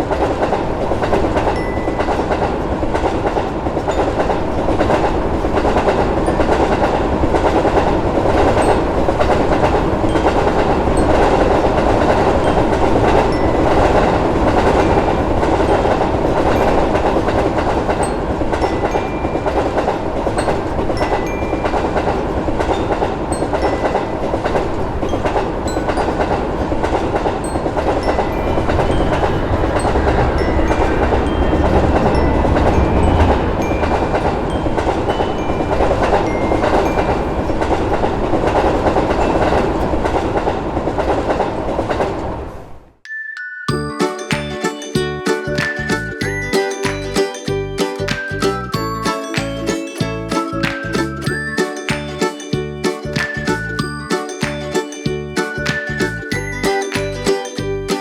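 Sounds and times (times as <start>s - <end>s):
wheels clacking over rail joints: 0.0s - 42.8s, 43.7s - 58.0s
train running noise: 0.0s - 42.9s, 43.7s - 58.0s.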